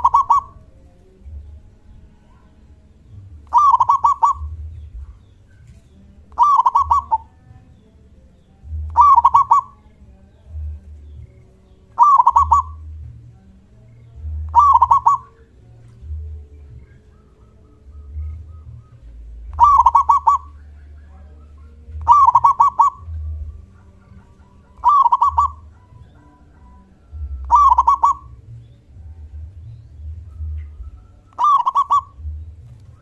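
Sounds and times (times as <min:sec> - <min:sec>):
dove cooing: 0:00.0 - 0:01.4, 0:03.2 - 0:05.6, 0:06.3 - 0:07.4, 0:08.6 - 0:09.8, 0:12.0 - 0:13.1, 0:14.2 - 0:33.0
faint low rumble: 0:00.0 - 0:33.0.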